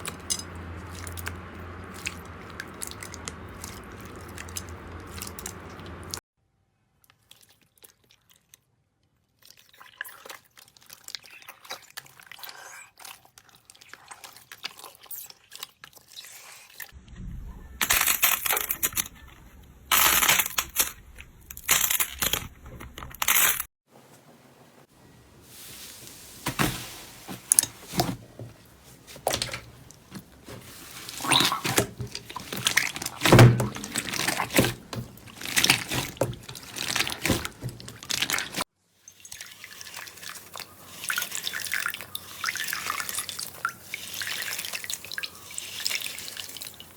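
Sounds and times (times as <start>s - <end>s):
slime squelching and popping: 29.1s - 38.6s.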